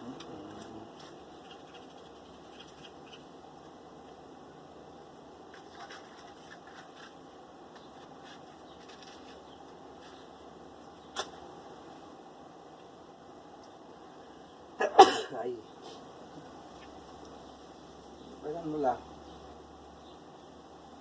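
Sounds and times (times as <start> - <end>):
twigs and kindling clicking: 0.0 - 4.2, 5.5 - 11.5, 16.7 - 17.4
steady background hiss: 0.0 - 21.0.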